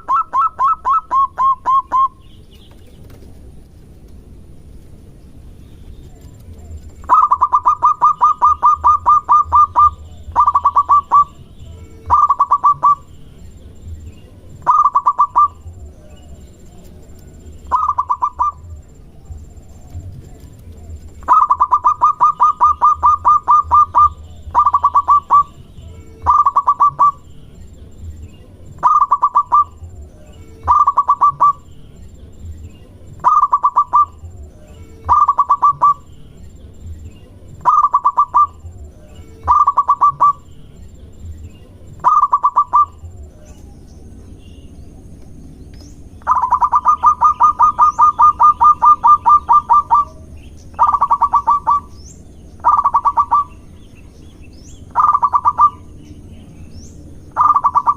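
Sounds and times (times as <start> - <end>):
dove cooing: 0.0 - 2.2, 6.6 - 13.1, 14.5 - 25.6, 26.2 - 27.3, 28.7 - 31.7, 33.0 - 36.1, 37.5 - 40.5, 41.9 - 43.7, 46.2 - 52.0, 52.6 - 53.7, 54.9 - 55.9, 57.3 - 57.9.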